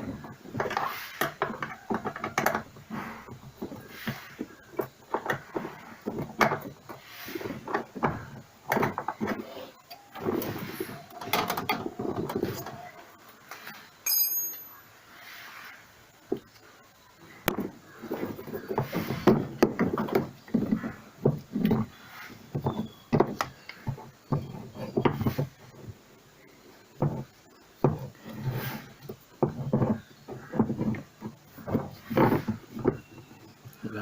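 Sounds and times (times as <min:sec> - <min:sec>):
machine parts knocking and scraping: 0:00.0 - 0:14.6, 0:16.3 - 0:34.0.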